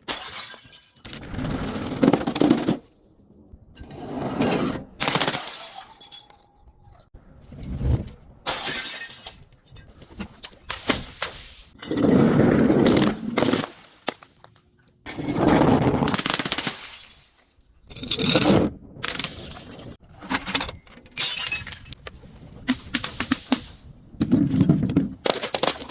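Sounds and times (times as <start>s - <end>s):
glass bottles shattering: 0.0s - 1.1s, 5.1s - 6.6s, 8.5s - 9.9s, 16.4s - 18.3s, 19.1s - 20.0s, 20.6s - 22.0s.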